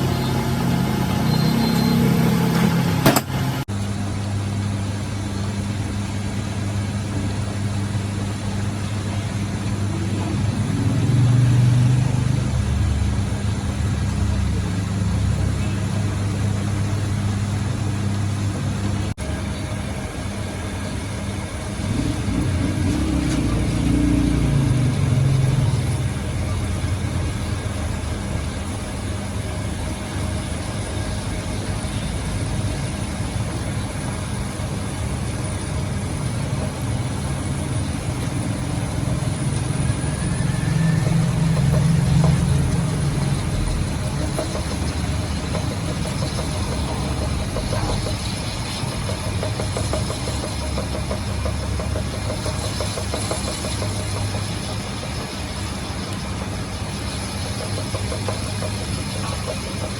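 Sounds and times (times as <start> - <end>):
motor humming: 0.0 - 3.7.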